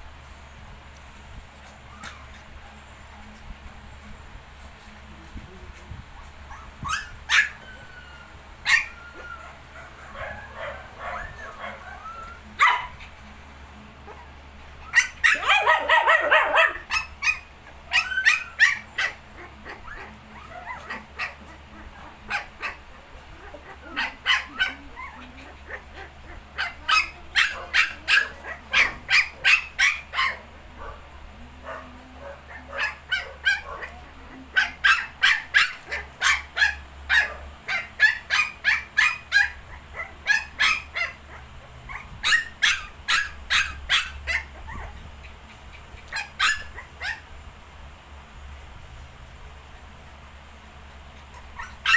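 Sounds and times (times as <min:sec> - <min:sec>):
puppies whining: 0:01.6 - 0:02.5, 0:06.2 - 0:13.2, 0:14.0 - 0:31.0, 0:31.6 - 0:47.4, 0:51.1 - 0:51.9
puppies yipping and squeaking: 0:01.6 - 0:02.5, 0:06.2 - 0:13.2, 0:14.1 - 0:31.0, 0:31.6 - 0:47.4, 0:51.1 - 0:51.9.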